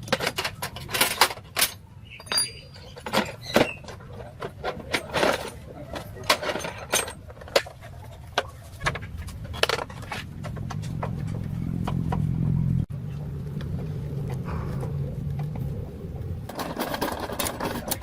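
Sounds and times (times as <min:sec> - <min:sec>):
low motor hum: 0:09.0 - 0:17.3.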